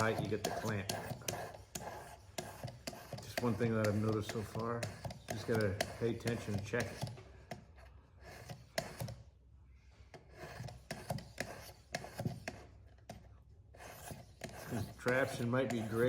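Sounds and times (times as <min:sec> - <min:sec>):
sharpening stone rubbing on steel: 0:00.0 - 0:07.1, 0:10.3 - 0:12.7, 0:13.7 - 0:16.0.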